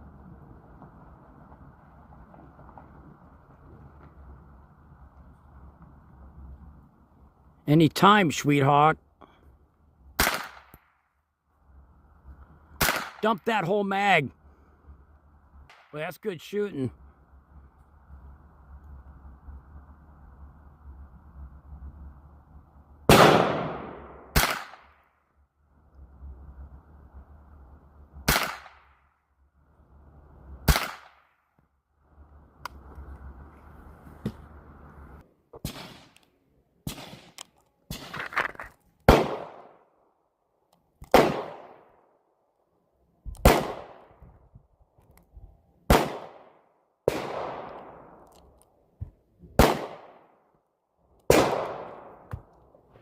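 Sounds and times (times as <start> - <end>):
gunshots: 10.2 - 10.8, 12.8 - 13.4, 23.1 - 25.0, 28.3 - 28.9, 30.6 - 31.2, 35.6 - 36.2, 36.8 - 38.2, 39.1 - 39.7, 41.1 - 41.8, 43.4 - 44.0, 45.9 - 46.5, 47.1 - 48.0, 49.6 - 50.2, 51.3 - 52.2.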